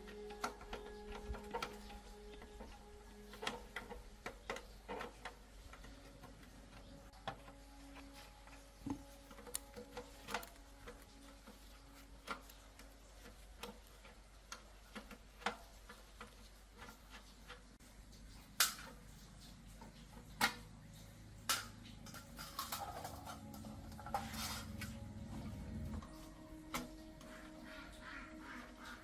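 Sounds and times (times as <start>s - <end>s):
metal parts clicking and knocking: 0.0s - 17.7s, 21.5s - 25.2s
scraping and rustling: 0.0s - 29.0s.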